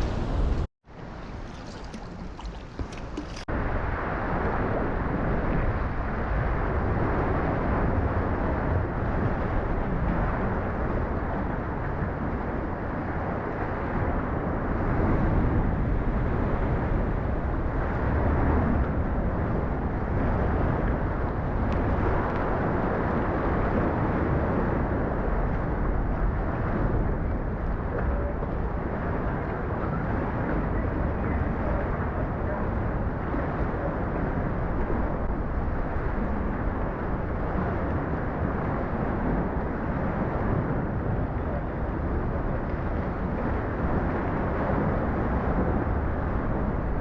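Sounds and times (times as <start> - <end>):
sea water rushing: 0.0 - 5.2
wind: 0.0 - 47.0.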